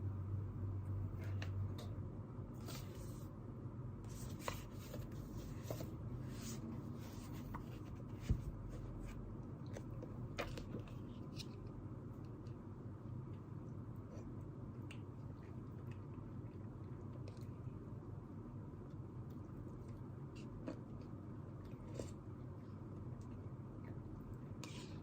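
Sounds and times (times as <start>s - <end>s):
low room hum: 0.0s - 25.0s
scratches and rustles at desk: 2.6s - 3.3s, 4.0s - 11.7s.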